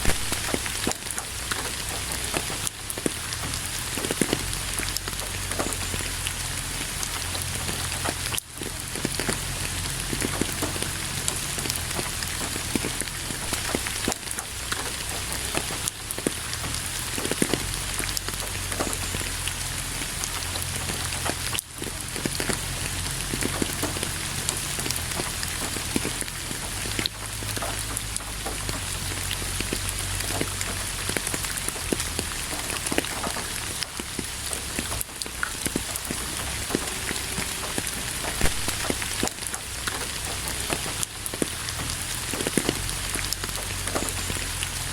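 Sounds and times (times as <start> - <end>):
rain on a hard surface: 0.0 - 44.9.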